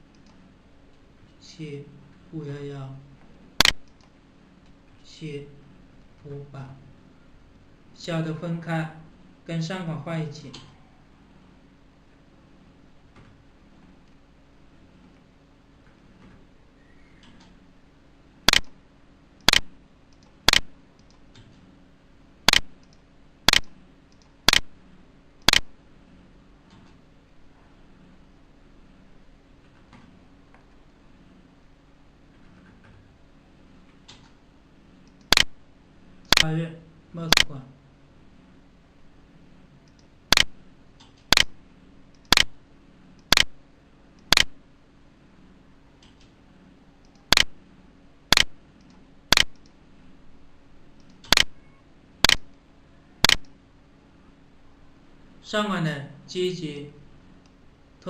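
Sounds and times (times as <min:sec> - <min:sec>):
loud sharp clicks: 0:03.6 - 0:04.1, 0:18.5 - 0:18.8, 0:19.4 - 0:21.2, 0:22.5 - 0:24.7, 0:25.4 - 0:25.7, 0:35.0 - 0:35.5, 0:39.8 - 0:41.5, 0:42.1 - 0:42.6, 0:43.2 - 0:43.5, 0:44.2 - 0:44.5, 0:47.0 - 0:47.5, 0:48.3 - 0:49.8, 0:52.2 - 0:52.6, 0:53.2 - 0:53.6.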